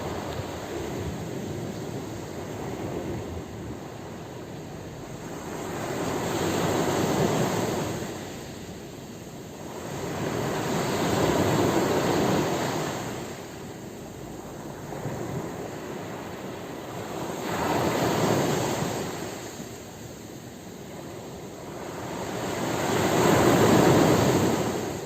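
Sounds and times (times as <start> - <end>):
sea waves breaking: 0.0 - 20.3, 20.9 - 25.0.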